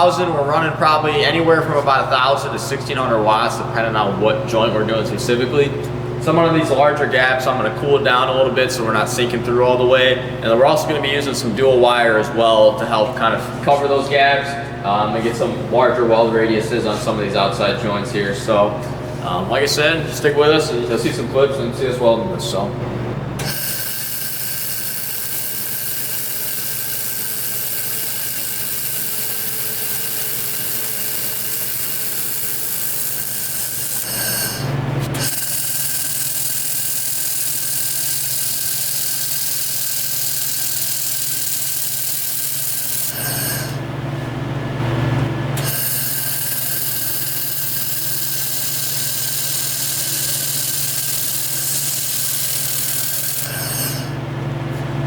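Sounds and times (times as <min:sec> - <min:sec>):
laser welder hissing sizzle: 0:23.4 - 0:43.8, 0:45.6 - 0:54.2.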